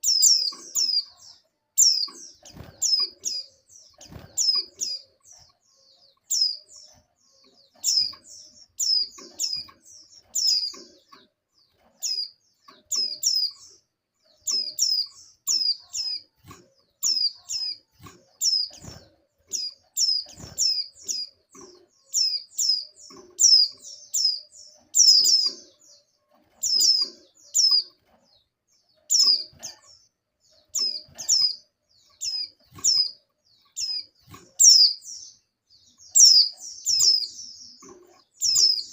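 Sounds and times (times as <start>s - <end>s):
bird giving high chirps: 0.0s - 5.3s, 30.6s - 35.4s, 36.0s - 38.9s.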